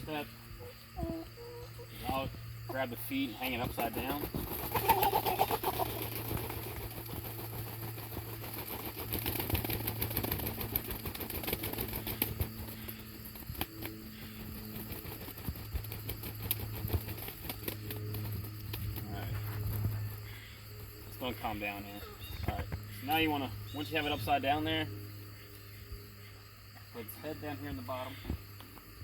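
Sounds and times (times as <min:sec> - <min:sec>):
steady low hum: 0:00.0 - 0:29.0
rooster wings flapping: 0:03.4 - 0:20.2.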